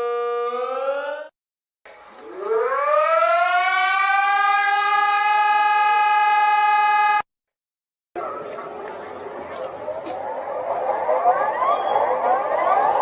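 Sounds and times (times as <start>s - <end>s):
warning siren winding up: 0.0s - 1.3s, 2.2s - 7.2s.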